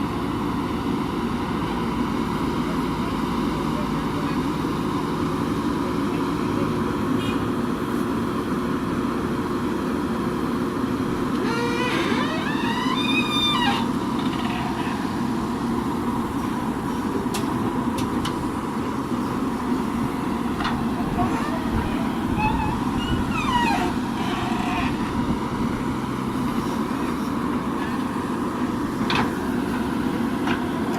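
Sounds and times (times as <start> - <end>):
diesel engine running: 0.0 - 30.9.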